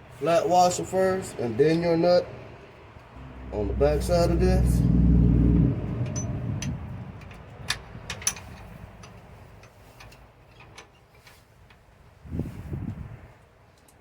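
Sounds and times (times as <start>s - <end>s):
low rumble: 3.2s - 8.2s.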